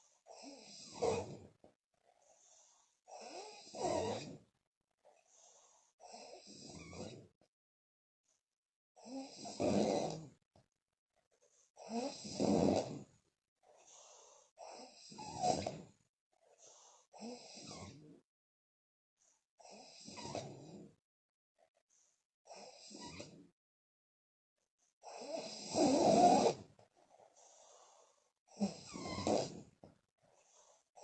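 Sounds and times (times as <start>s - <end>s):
woman snoring loudly: 0.3s - 1.4s, 3.1s - 4.4s, 6.0s - 7.2s, 9.0s - 10.4s, 11.8s - 13.1s, 14.6s - 15.8s, 17.2s - 18.0s, 25.0s - 26.7s, 28.5s - 29.8s.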